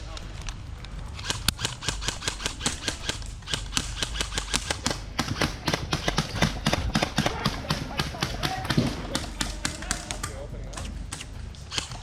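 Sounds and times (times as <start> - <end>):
airsoft guns firing: 1.2 - 12.0.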